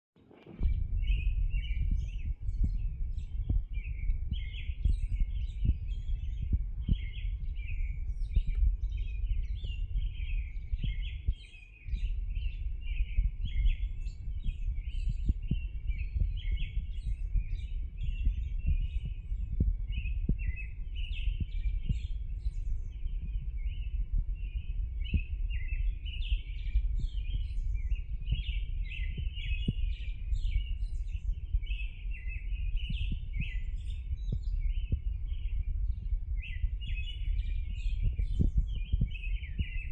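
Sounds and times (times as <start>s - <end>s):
birds chirping: 0.2s - 39.9s
low rumble with clicks: 0.3s - 39.9s.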